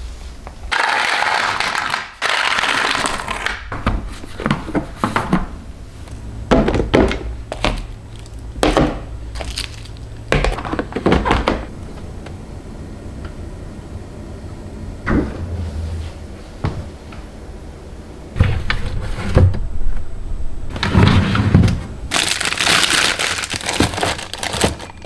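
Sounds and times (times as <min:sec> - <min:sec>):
objects knocking and clunking: 0:06.5 - 0:11.7
rustling noise: 0:15.2 - 0:17.4.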